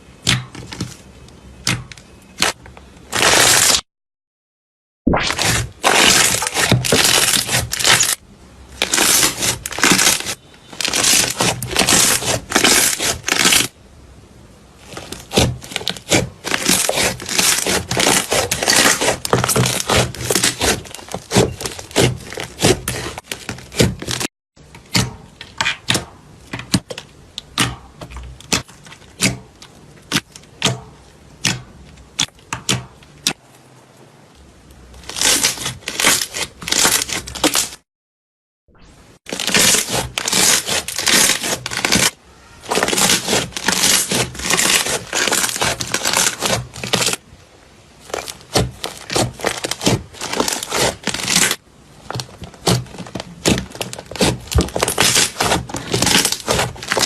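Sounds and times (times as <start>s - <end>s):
slime crackling when squeezed: 39.3s - 47.2s.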